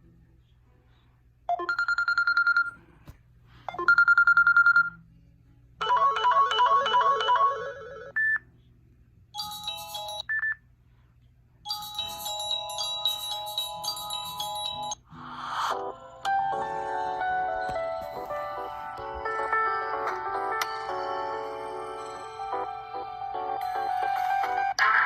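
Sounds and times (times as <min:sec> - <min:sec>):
chiming ringtone melody: 0:05.8 - 0:08.3, 0:09.4 - 0:10.3, 0:11.7 - 0:15.0, 0:15.9 - 0:24.7.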